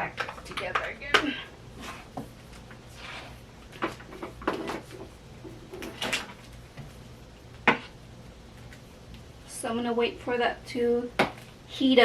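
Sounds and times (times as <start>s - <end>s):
items knocking and clicking: 0.0s - 1.4s, 3.7s - 6.9s, 11.2s - 11.5s.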